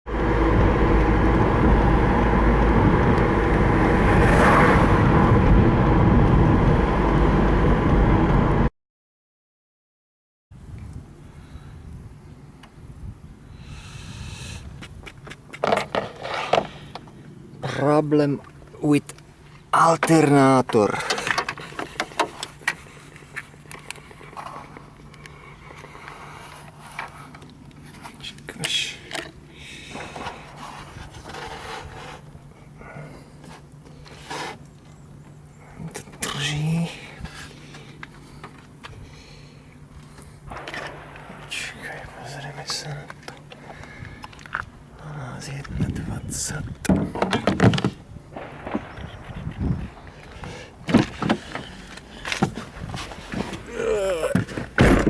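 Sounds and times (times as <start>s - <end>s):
diesel engine running: 0.1s - 8.7s.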